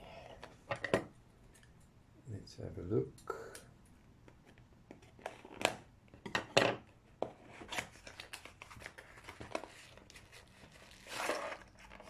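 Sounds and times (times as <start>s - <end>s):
packaging rustling and scraping: 7.4s - 12.0s.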